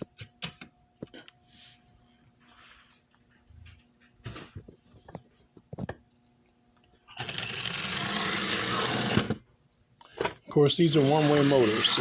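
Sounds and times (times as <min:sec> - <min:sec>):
electric motor whirring: 0:07.2 - 0:09.4, 0:10.9 - 0:12.0.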